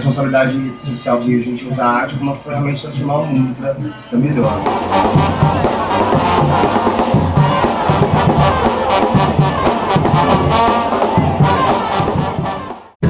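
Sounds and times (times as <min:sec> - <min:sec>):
steady drum beat: 0:01.4 - 0:13.0
brass horns playing: 0:04.4 - 0:13.0.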